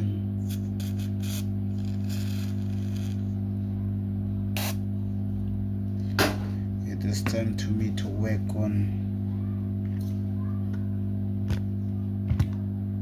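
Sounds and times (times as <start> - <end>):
steady electrical hum: 0.0 - 13.0.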